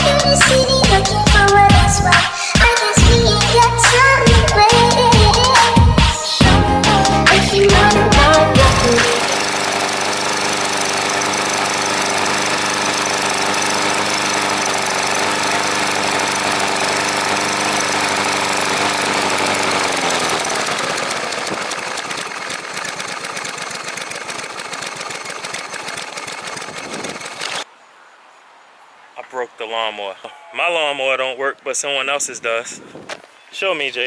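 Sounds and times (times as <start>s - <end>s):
lawn mower engine running: 0.0s - 27.7s.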